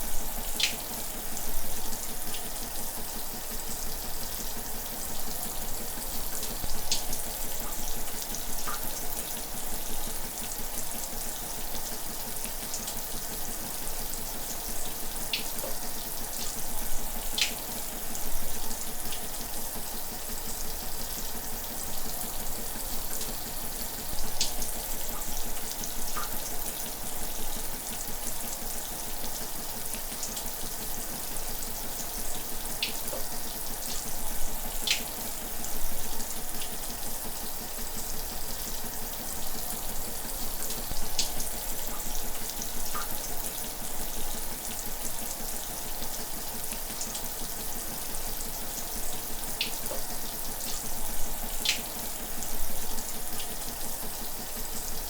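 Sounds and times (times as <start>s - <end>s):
shower running: 0.0s - 55.0s
water splashes and drips: 0.3s - 1.0s, 6.4s - 9.5s, 15.3s - 18.1s, 24.2s - 27.0s, 32.7s - 35.6s, 40.6s - 43.8s, 48.4s - 54.8s.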